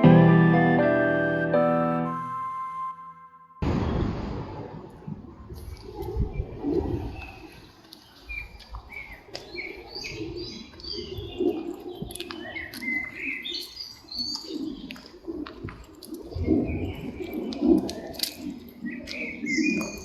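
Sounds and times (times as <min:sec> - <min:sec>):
small birds chirping: 0:05.7 - 0:15.3, 0:16.2 - 0:20.0.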